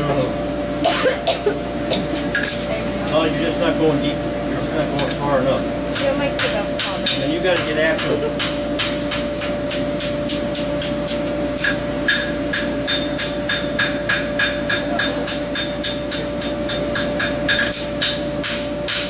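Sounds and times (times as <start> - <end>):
steady hum: 0.0 - 19.0
hammer striking anvil: 5.9 - 19.0.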